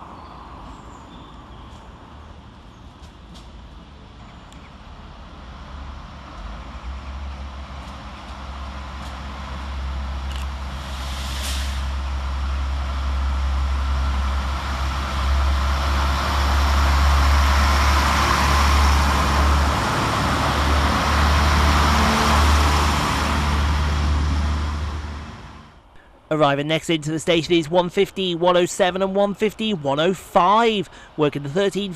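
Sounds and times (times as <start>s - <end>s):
low diesel engine hum: 2.0s - 25.9s
rising hiss: 10.6s - 16.0s.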